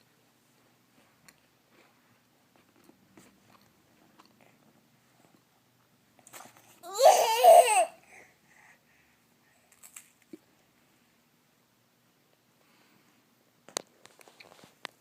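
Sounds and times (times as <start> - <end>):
baby chewing: 1.2 - 5.5.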